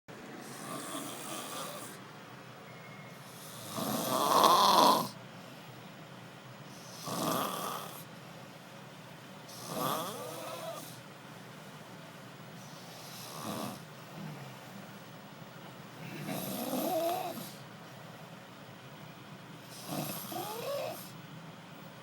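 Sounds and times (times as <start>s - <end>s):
person snoring: 0.4s - 2.0s, 3.3s - 5.2s, 6.8s - 8.1s, 9.5s - 11.0s, 12.7s - 14.6s, 16.0s - 17.6s, 19.6s - 21.2s.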